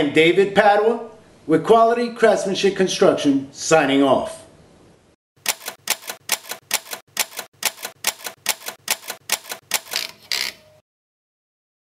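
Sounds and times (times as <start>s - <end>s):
steady ticking clicks: 5.4s - 10.1s.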